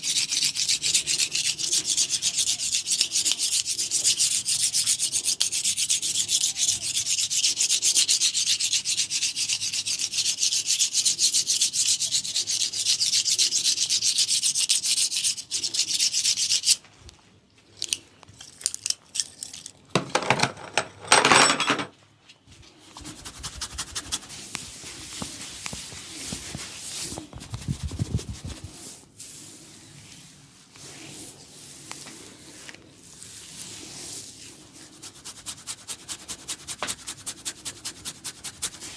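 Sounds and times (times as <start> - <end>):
hands rubbing through oiled hair: 22.8 - 38.9.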